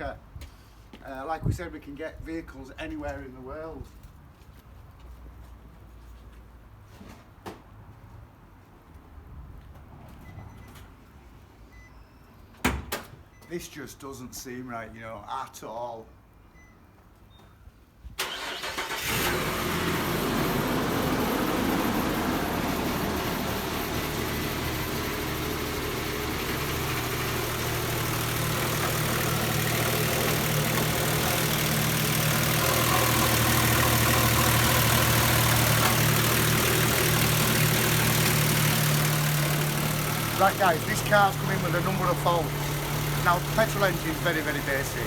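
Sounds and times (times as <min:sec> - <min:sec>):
car engine cranking and idling: 0:18.2 - 0:45.0.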